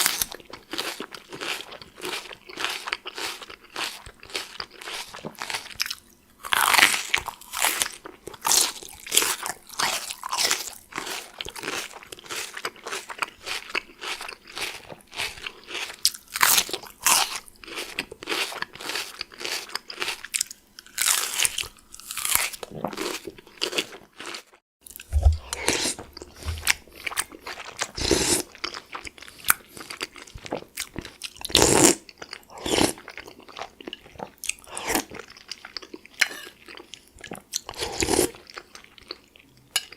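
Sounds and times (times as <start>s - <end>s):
crisp crunching of raw pepper: 0.0s - 31.9s
chewing noodle soup: 0.0s - 39.9s.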